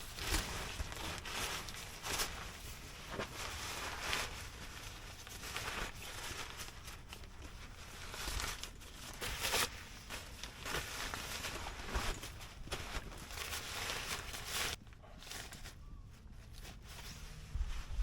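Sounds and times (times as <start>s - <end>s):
rustling and crinkling gear: 0.0s - 18.0s
fabric swishes: 16.5s - 18.0s.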